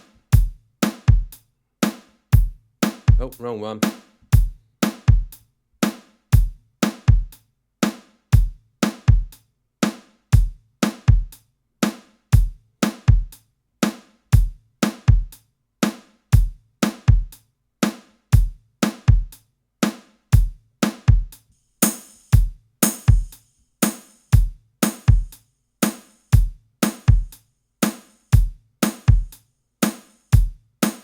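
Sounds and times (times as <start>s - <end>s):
drum loop: 0.0s - 31.0s.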